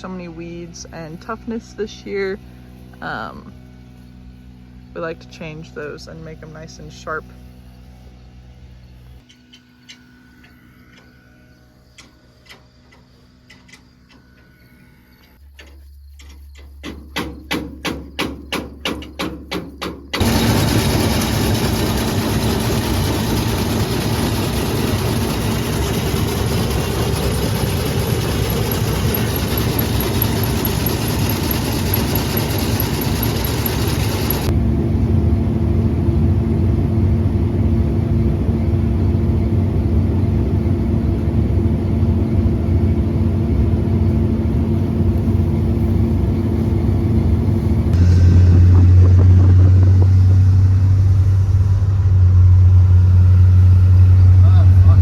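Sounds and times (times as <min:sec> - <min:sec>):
harvest machine engine running: 0:20.1 - 0:55.0.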